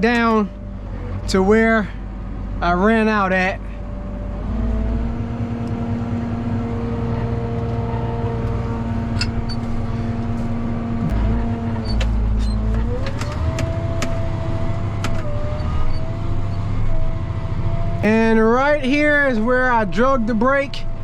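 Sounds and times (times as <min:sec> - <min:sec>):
tractor engine running: 0:00.0 - 0:21.0
sharp clicks and rattles: 0:11.7 - 0:14.3.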